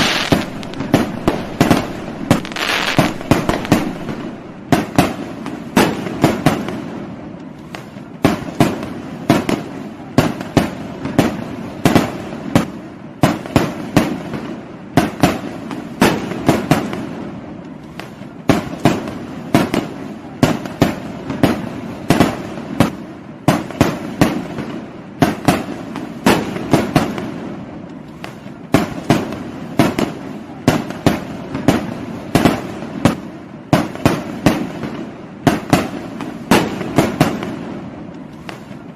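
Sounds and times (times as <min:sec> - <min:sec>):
steady noisy background: 0:00.0 - 0:05.4
fireworks bangs: 0:00.0 - 0:38.9.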